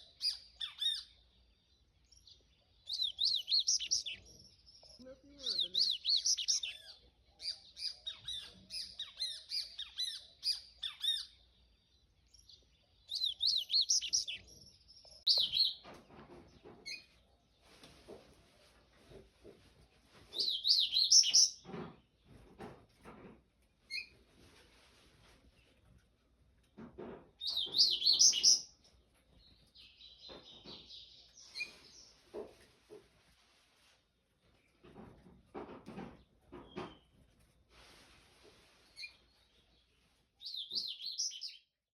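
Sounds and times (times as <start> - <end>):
bird twittering song: 0.0 - 15.9, 20.3 - 21.6, 27.4 - 32.2, 38.9 - 41.7
bird singing whistled notes: 20.4 - 21.6, 27.5 - 28.7, 40.4 - 41.6
bird twittering: 20.4 - 21.6, 27.4 - 28.7.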